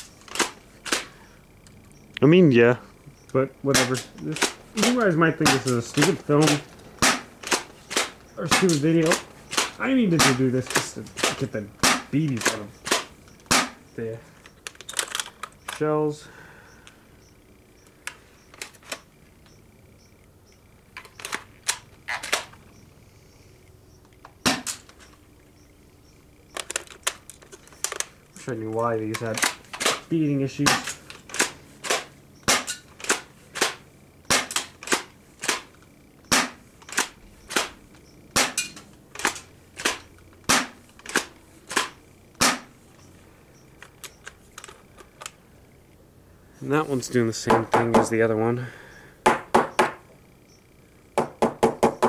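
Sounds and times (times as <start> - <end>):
airsoft shotgun shots: 3.7 - 13.8, 24.4 - 24.9, 30.6 - 35.7, 36.3 - 42.7
plastic clicks of toy shotgun: 21.0 - 22.5, 26.6 - 28.1, 30.7 - 37.8, 38.4 - 42.6.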